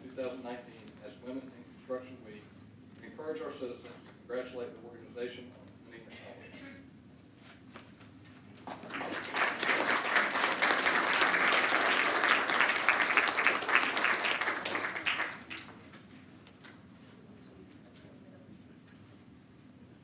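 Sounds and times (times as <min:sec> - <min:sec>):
audience applauding: 0:08.6 - 0:15.8.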